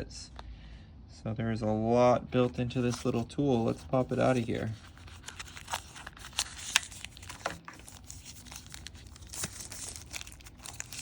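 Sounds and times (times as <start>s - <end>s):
packaging crinkling and tearing: 2.8s - 11.0s.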